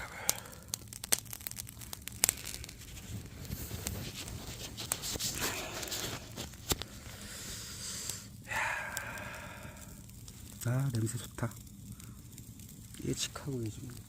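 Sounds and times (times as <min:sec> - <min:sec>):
ribs sizzling on grill: 0:00.0 - 0:14.0
wood fire crackling: 0:00.0 - 0:14.0
rustling: 0:01.3 - 0:07.2.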